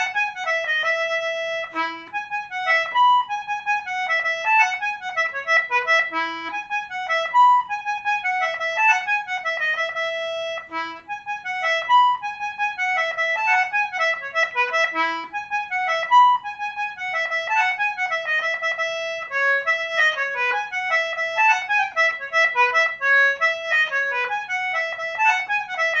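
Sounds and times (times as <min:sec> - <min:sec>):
concertina playing fast melody: 0:00.0 - 0:26.0.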